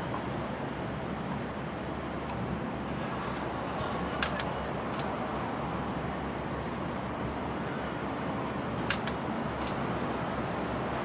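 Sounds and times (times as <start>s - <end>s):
outdoor crowd hum: 0.0s - 11.0s
short high camera beep: 6.6s - 6.8s, 10.4s - 10.6s.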